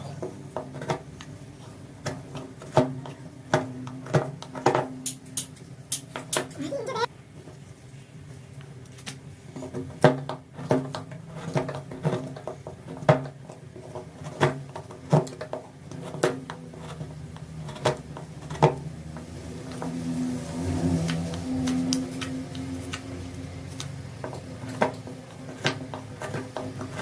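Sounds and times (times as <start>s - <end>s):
hand tools clicking and knocking wood: 9.6s - 27.0s.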